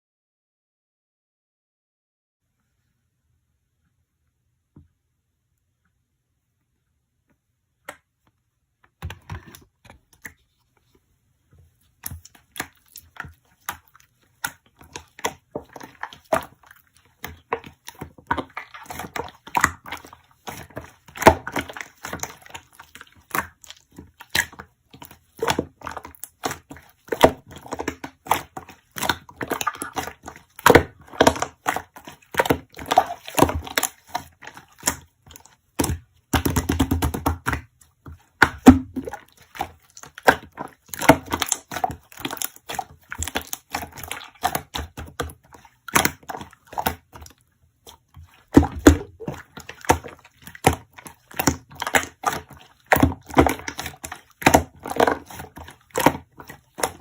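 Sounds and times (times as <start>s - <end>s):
slime squished by hand: 12.0s - 57.0s.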